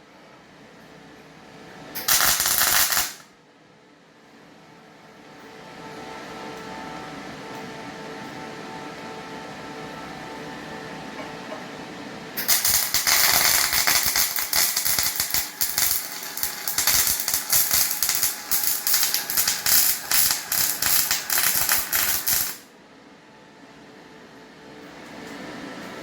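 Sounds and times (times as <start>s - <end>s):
welding arc crackling: 2.0s - 3.2s, 12.4s - 22.6s.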